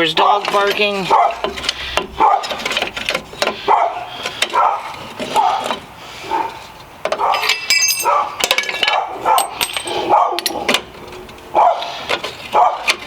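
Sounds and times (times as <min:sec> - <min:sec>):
dog barking: 0:01.1 - 0:01.4, 0:02.2 - 0:02.6, 0:03.6 - 0:06.6, 0:07.2 - 0:10.7, 0:11.5 - 0:13.0
ringing metallic clinks: 0:07.3 - 0:10.6.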